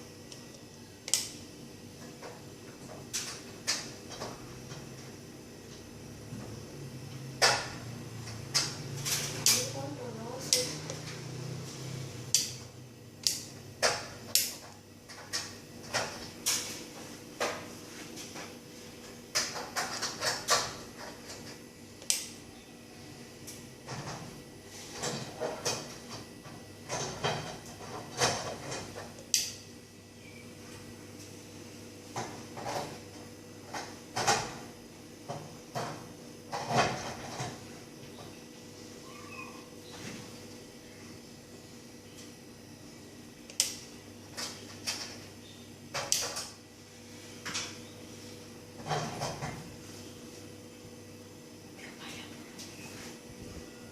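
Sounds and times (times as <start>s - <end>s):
faint steady hum: 0.0s - 53.9s.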